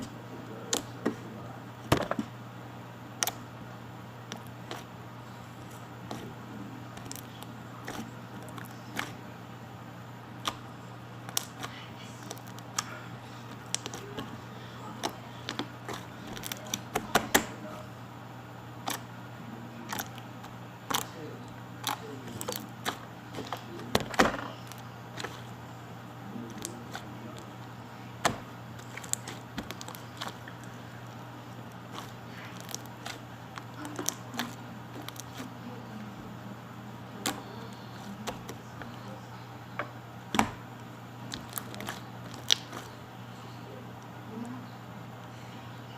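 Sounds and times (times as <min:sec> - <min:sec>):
slime squished by hand: 0:07.0 - 0:09.2, 0:10.4 - 0:17.6, 0:21.8 - 0:25.6, 0:28.2 - 0:30.8, 0:31.6 - 0:35.6, 0:37.2 - 0:39.0, 0:41.2 - 0:43.0.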